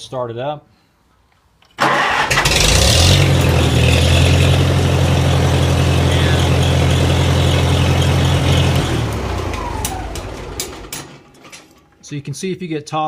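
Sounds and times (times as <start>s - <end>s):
tractor engine idling: 1.8s - 11.6s.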